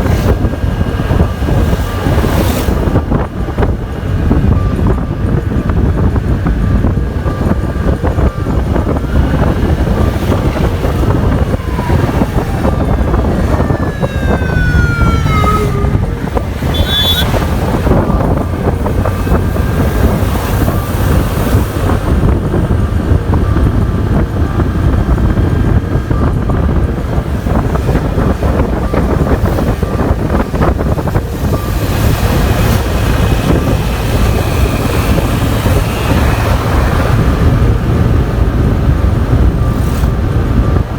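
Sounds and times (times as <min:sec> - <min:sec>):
road and traffic rumble: 0:00.0 - 0:40.9
wind buffeting microphone: 0:00.0 - 0:40.9
passing horn with falling pitch: 0:07.4 - 0:22.2, 0:27.8 - 0:37.8
short high beep: 0:15.2 - 0:18.6.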